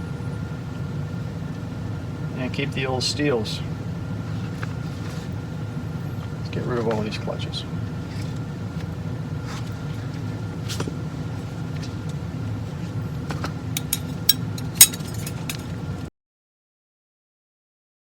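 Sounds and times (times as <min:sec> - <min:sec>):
steady low hum: 0:00.0 - 0:16.0
metallic clicks of clutch plates: 0:13.8 - 0:15.7.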